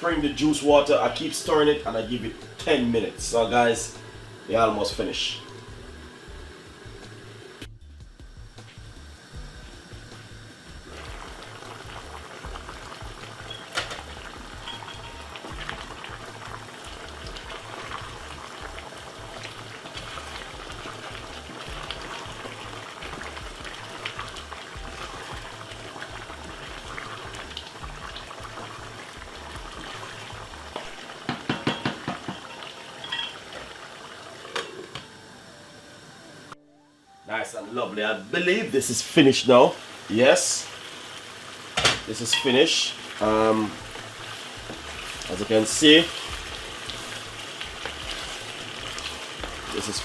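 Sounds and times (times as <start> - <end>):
stew bubbling in a pot: 10.7 - 35.0, 39.1 - 50.0.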